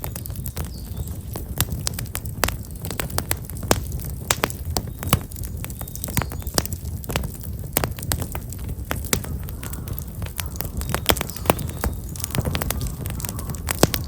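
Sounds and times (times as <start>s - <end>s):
campfire crackling and popping: 0.0s - 14.0s
low rumble of flames: 0.0s - 14.0s.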